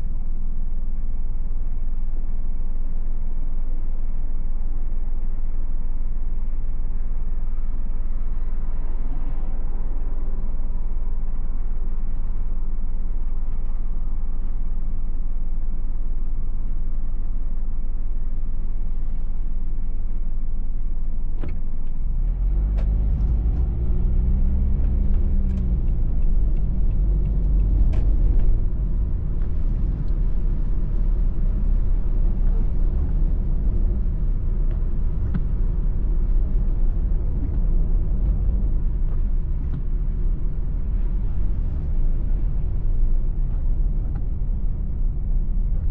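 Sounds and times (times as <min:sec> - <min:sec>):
road noise: 0:06.3 - 0:45.9
car engine: 0:20.6 - 0:45.9.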